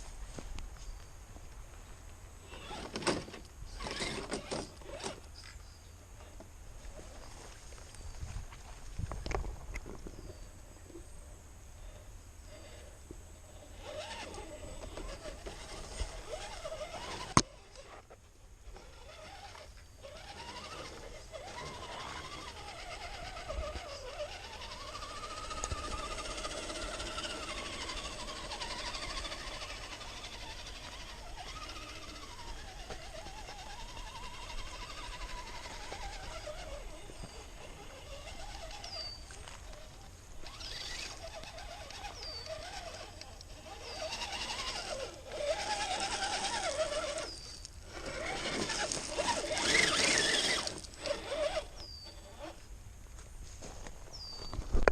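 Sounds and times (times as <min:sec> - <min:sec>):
electric motor whining: 0:02.4 - 0:05.3, 0:13.5 - 0:52.7
bird chirps: 0:38.8 - 0:39.3, 0:42.1 - 0:42.6, 0:51.7 - 0:52.2, 0:54.1 - 0:54.7.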